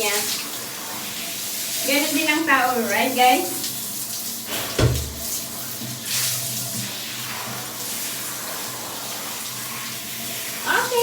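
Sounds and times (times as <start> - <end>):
shower water running: 0.0 - 11.0
dull low thump: 4.8 - 5.2.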